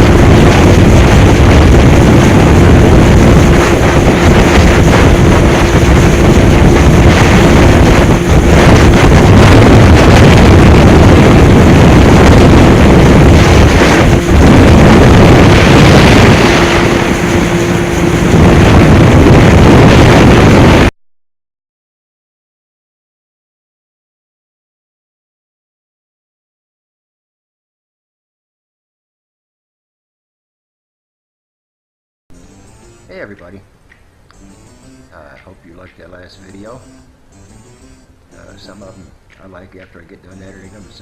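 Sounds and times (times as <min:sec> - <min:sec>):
wind buffeting microphone: 0:00.0 - 0:20.9.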